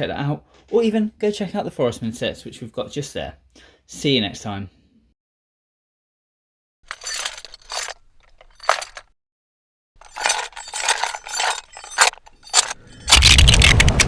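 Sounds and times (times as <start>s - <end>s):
clinking and clattering: 6.9s - 9.1s, 10.0s - 14.0s.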